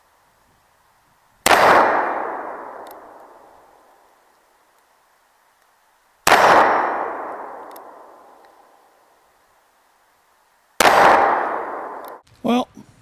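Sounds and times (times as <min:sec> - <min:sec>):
revolver gunshot: 0:01.4 - 0:03.4, 0:06.2 - 0:08.4, 0:10.8 - 0:12.2.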